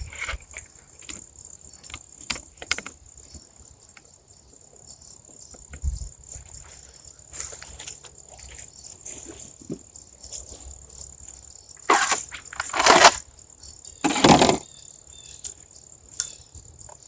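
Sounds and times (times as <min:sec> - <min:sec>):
crickets chirping: 0:00.0 - 0:17.0
loud scuffing noises: 0:11.9 - 0:13.2.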